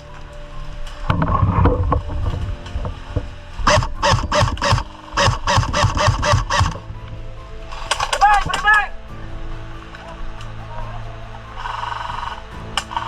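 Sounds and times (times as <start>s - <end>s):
airsoft guns firing rapid shots: 3.7s - 6.8s.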